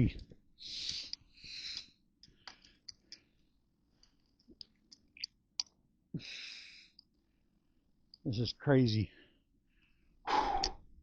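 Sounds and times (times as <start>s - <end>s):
person breathing out: 9.9s - 10.9s.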